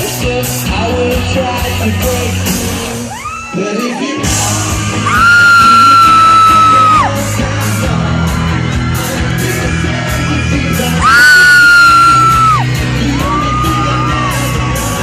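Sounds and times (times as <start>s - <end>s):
pop-rock band playing: 0.0s - 15.0s
person screaming: 5.0s - 7.1s, 11.0s - 12.6s.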